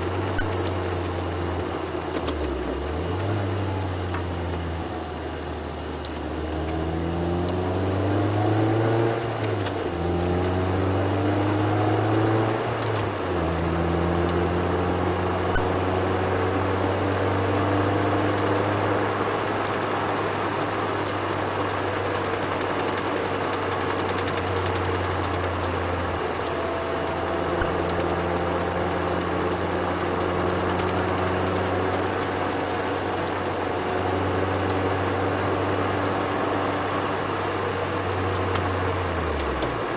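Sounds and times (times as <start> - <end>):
car engine running: 0.0 - 39.9.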